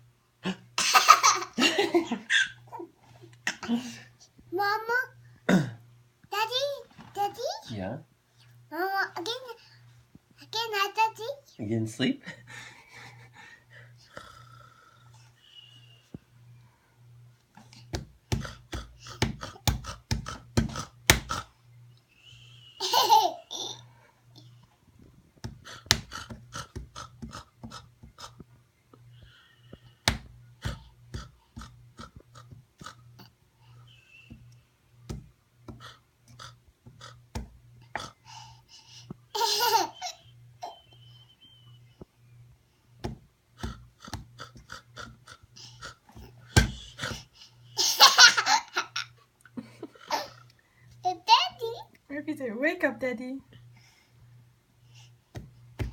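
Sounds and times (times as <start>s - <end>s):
steady low hum: 0.0s - 55.9s
toddler laughing: 0.8s - 2.9s, 22.8s - 23.9s, 39.3s - 41.0s, 47.8s - 49.2s, 50.0s - 50.5s.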